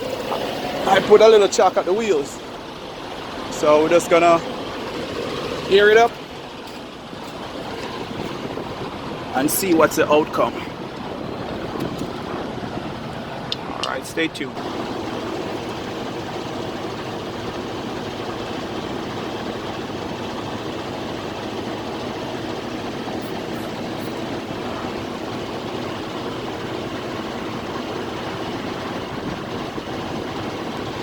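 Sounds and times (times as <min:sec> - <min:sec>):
diesel truck engine idling: 0:00.0 - 0:31.0.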